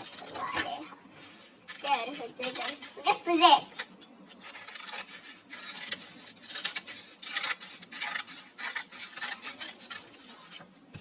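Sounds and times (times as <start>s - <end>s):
scissors cutting paper: 0.0s - 0.8s, 1.7s - 11.0s.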